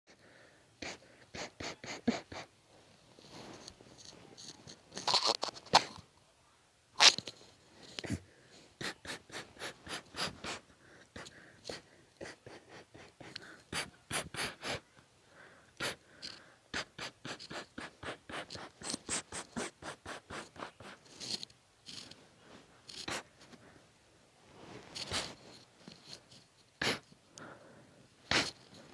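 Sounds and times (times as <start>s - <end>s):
person sneezing and snorting: 0.8s - 2.5s, 8.0s - 8.2s, 8.8s - 10.6s, 11.2s - 14.8s, 15.8s - 16.0s, 16.7s - 21.0s, 22.9s - 23.3s, 25.0s - 25.4s, 26.8s - 27.1s, 28.3s - 28.6s.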